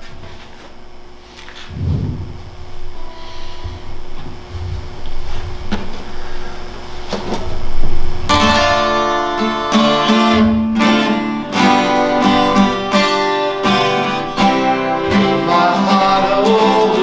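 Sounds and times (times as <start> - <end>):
low rumble: 1.7 - 6.1
acoustic guitar strumming chords: 8.2 - 17.0.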